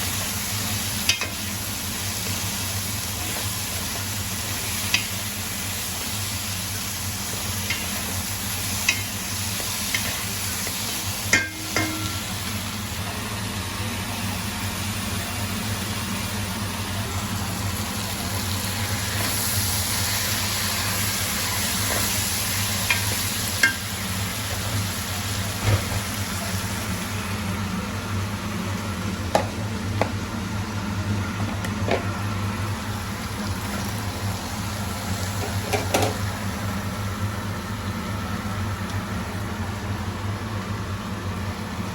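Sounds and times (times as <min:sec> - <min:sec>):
food sizzling in a pan: 0:00.0 - 0:13.0, 0:15.4 - 0:27.8, 0:32.3 - 0:39.6
utensil clinking against pan: 0:11.3 - 0:12.3.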